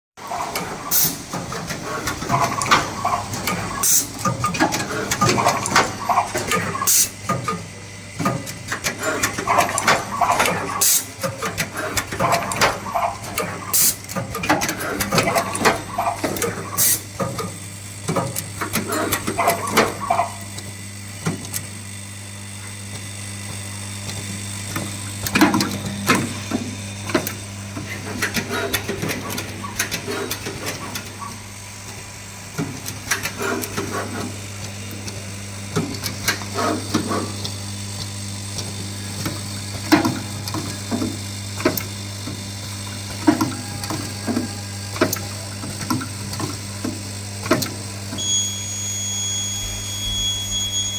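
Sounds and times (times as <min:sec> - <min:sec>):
machine mechanism clicks and knocks: 0:00.4 - 0:07.6, 0:08.2 - 0:20.0
low machine hum: 0:48.0 - 0:50.9.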